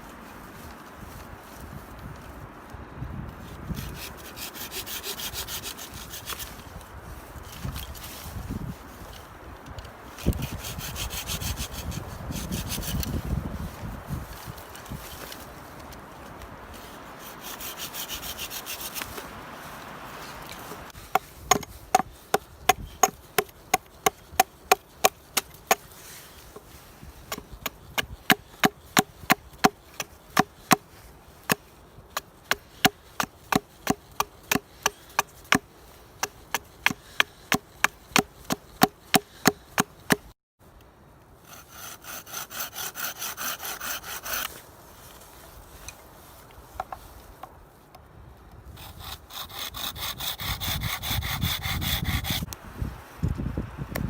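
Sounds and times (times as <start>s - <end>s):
sawing wood: 3.6s - 8.3s, 10.1s - 15.4s, 16.7s - 40.4s, 41.4s - 47.0s, 48.8s - 52.6s.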